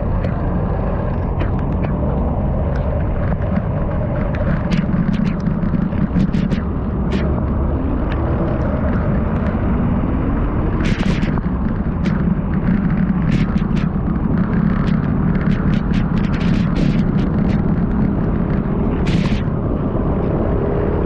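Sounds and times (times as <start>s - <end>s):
sharp clicks and ticks: 0.0s - 19.6s
wind buffeting microphone: 0.0s - 21.0s.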